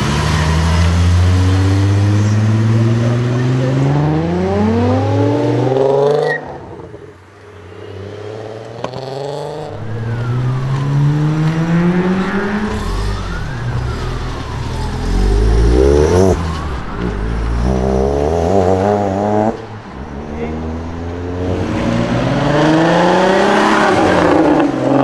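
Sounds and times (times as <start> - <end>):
car engine revving: 0.0 - 7.0, 7.7 - 25.0.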